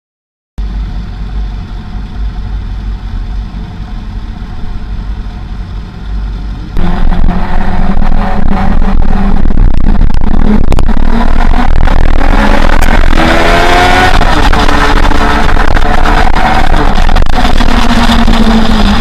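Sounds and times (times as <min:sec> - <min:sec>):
motorcycle engine running: 0:00.6 - 0:19.0
wind noise on microphone: 0:06.8 - 0:19.0.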